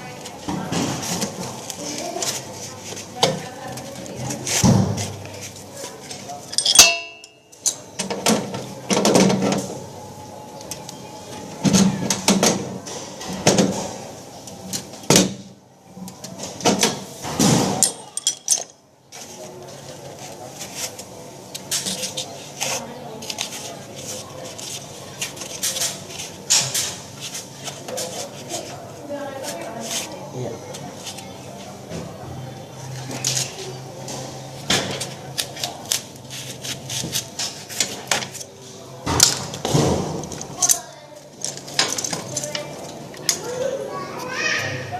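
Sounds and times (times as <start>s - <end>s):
tools knocking and clattering: 6.5s - 9.6s, 16.6s - 18.8s.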